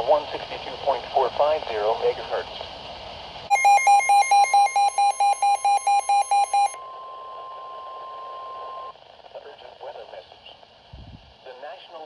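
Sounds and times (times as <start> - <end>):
rapid buzzy beeps: 3.5 - 6.8
steady high alarm tone: 3.5 - 8.9.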